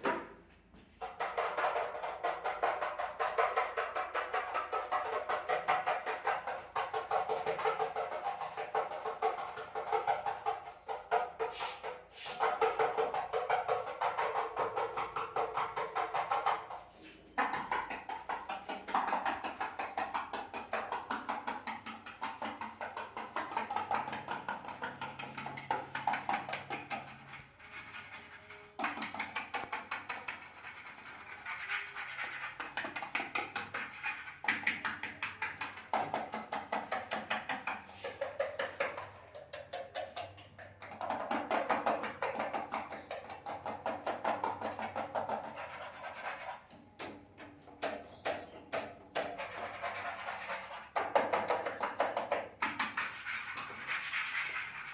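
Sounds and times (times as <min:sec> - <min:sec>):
fingers tapping on hard surface: 0:17.4 - 0:27.4, 0:28.8 - 0:30.7, 0:32.5 - 0:45.6, 0:51.0 - 0:53.2.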